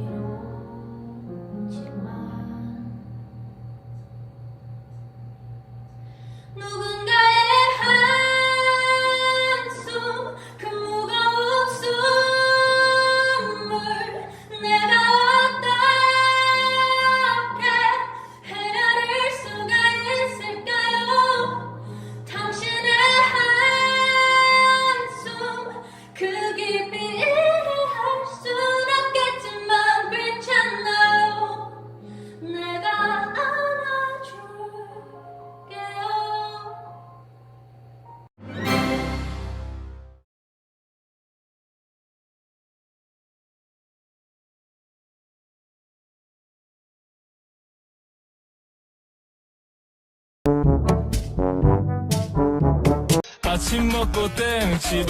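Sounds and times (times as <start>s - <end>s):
woman singing: 0.0s - 3.1s, 6.6s - 36.9s
quiet low accompaniment: 0.0s - 7.5s.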